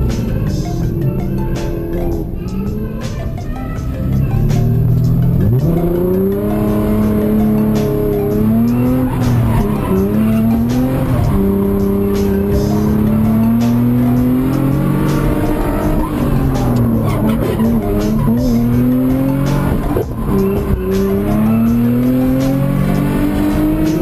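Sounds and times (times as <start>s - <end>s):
car engine revving: 0.0s - 24.0s
tyres skidding and squealing: 0.0s - 24.0s.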